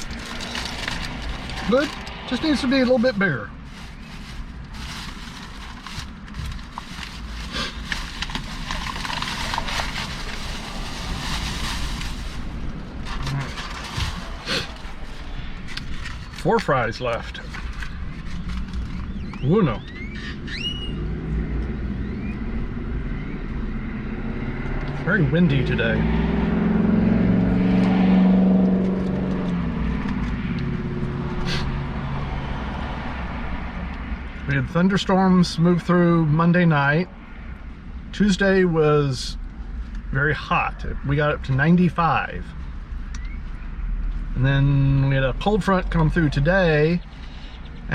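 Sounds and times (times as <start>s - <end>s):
small clicks and crinkles: 0.0s - 2.2s
passing vehicle engine: 0.0s - 19.2s, 20.5s - 34.7s
wind rumbling: 0.0s - 25.1s, 26.0s - 34.4s.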